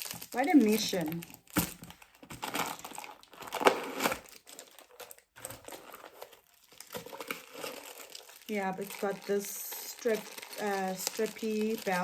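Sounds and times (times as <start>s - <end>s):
packaging crinkling and rustling: 0.0s - 12.0s
packaging tearing: 0.0s - 12.0s.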